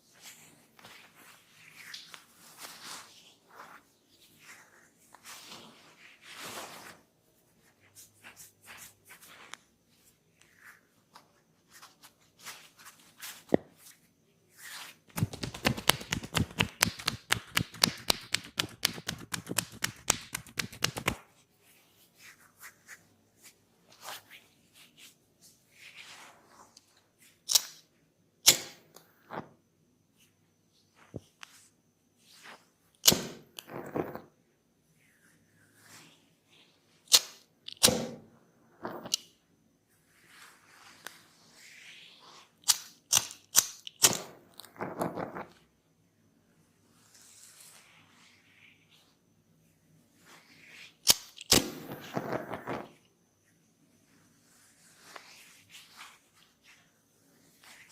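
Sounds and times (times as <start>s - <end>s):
soft rubbing: 0.1s - 17.8s
hands tapping on head: 15.2s - 21.2s
loud slaps: 15.2s - 21.2s.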